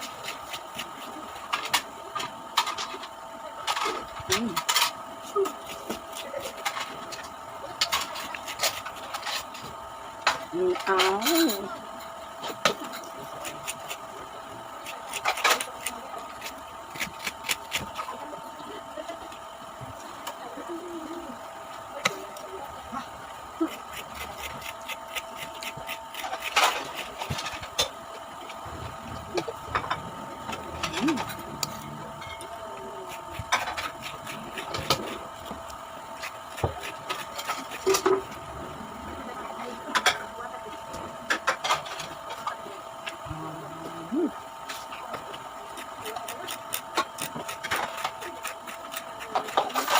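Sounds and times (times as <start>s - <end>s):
crunching and chewing: 3.7s - 10.3s, 12.5s - 18.3s, 23.6s - 38.6s, 44.7s - 49.9s.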